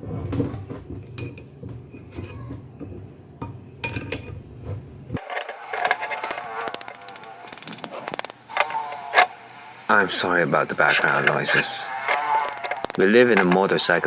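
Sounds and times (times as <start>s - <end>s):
metal tools clinking on vise: 5.2s - 9.3s, 10.9s - 13.7s
rapid clicks: 5.2s - 9.3s, 10.9s - 13.7s.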